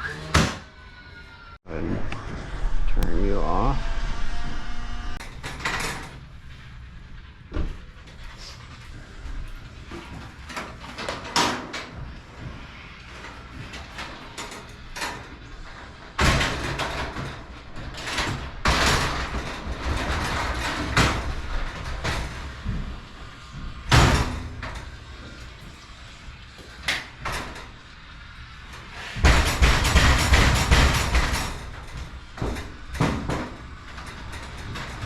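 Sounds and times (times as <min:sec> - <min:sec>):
garage door moving along tracks: 0:00.0 - 0:35.0
scattered clicks and knocks: 0:29.2 - 0:35.0.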